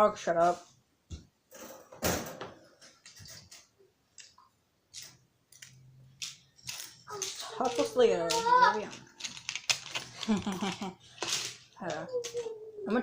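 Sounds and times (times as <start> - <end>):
plastic pieces clattering: 4.2 - 12.5.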